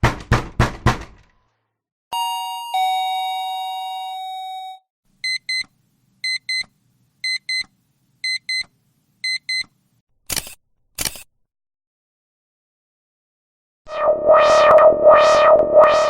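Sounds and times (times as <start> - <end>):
sharp noisy clicks: 10.3 - 11.3.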